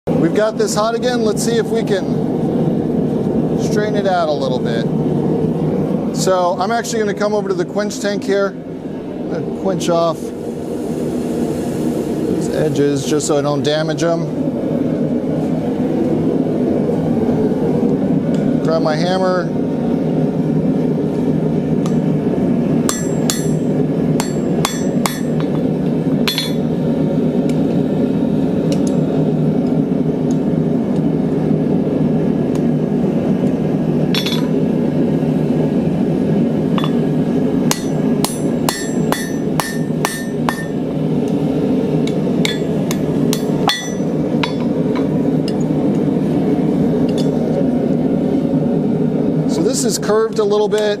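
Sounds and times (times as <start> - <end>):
hammer striking steel: 22.9 - 25.7, 26.3 - 26.7, 34.2 - 34.5, 36.8 - 37.0, 37.7 - 40.8, 42.5 - 45.1.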